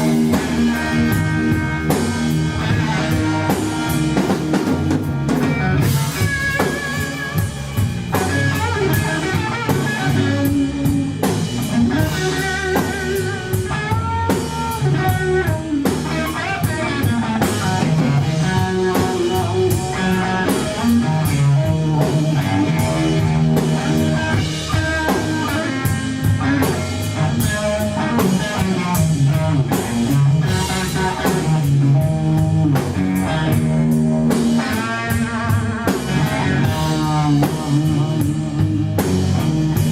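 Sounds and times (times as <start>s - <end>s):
bass guitar: 0.0s - 39.9s
drum kit: 0.0s - 39.9s
electric guitar lead: 0.0s - 39.9s.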